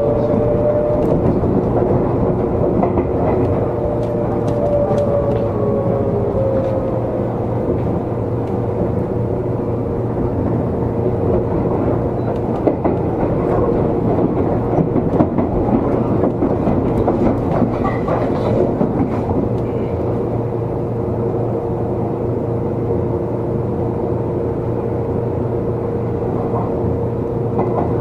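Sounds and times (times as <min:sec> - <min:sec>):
train wheels rumbling on rail: 0:00.0 - 0:28.0
clicks over rail joints: 0:12.3 - 0:19.7.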